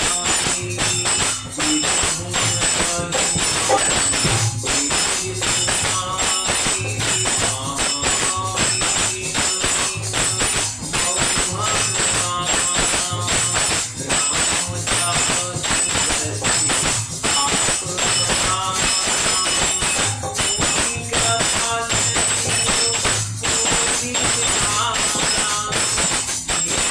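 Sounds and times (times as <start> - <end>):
jingling hand percussion: 0.0 - 26.9
low drum beat: 3.2 - 5.4
short melodic notes: 3.6 - 4.5.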